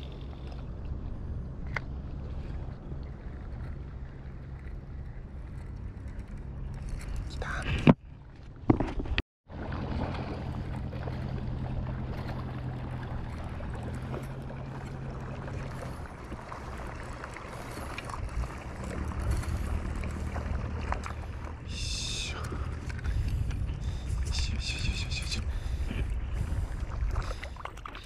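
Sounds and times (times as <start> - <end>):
boat engine running: 0.0 - 28.0
water noise: 0.0 - 28.0
wind noise: 17.6 - 28.0.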